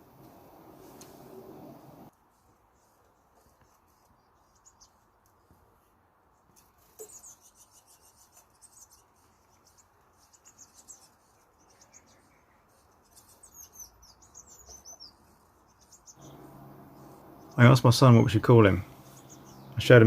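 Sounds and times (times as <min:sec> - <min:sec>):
blue tits chirping: 0:07.0 - 0:20.0.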